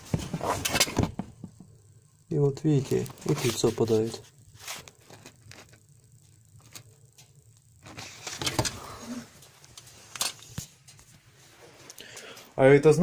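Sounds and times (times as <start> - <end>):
rustling handling noises: 2.4 - 7.2.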